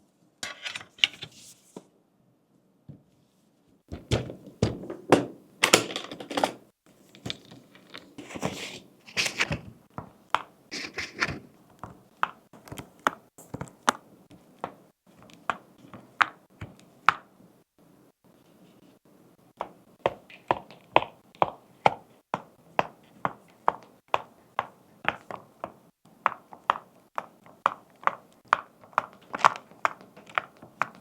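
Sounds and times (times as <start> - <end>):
keyboard parts scraping and rattling: 0.4 - 1.4, 4.0 - 9.7, 10.7 - 11.5, 29.1 - 31.0.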